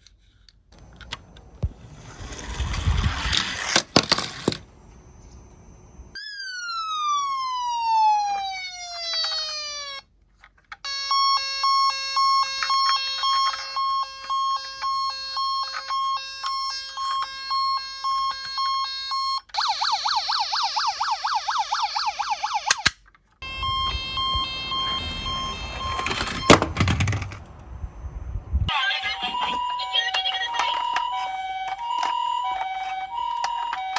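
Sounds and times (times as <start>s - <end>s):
toy electronic siren: 6.1s - 10.1s, 10.8s - 27.3s, 28.7s - 33.9s
low rumble: 23.5s - 28.7s.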